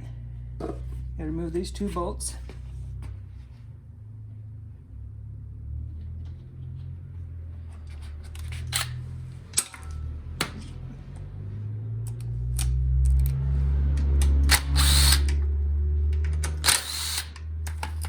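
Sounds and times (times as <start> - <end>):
steady low hum: 0.0 - 18.0
cordless drill whirring: 14.3 - 15.4, 16.6 - 17.4.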